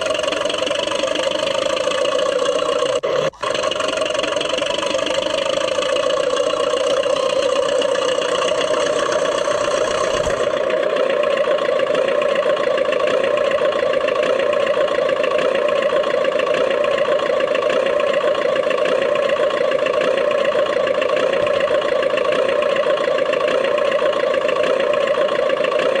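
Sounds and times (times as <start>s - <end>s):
model bulldozer engine drone: 0.0s - 26.0s.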